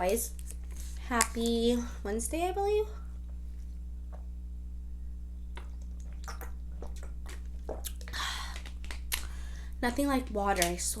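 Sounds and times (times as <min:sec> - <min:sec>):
steady low hum: 0:00.0 - 0:11.0
sipping and swallowing water: 0:05.5 - 0:09.8.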